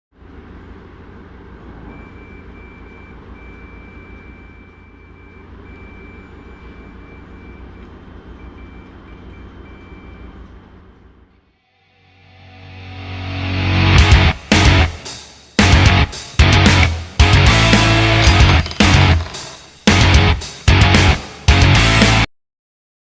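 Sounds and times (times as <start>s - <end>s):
low machine rumble and hum: 0.2s - 11.6s.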